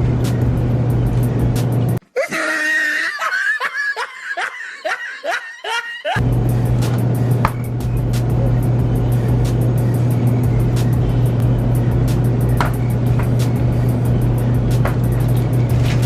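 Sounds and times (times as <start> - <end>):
background music with steady beat: 0.0 - 2.0, 6.2 - 16.0
person laughing: 2.0 - 6.2.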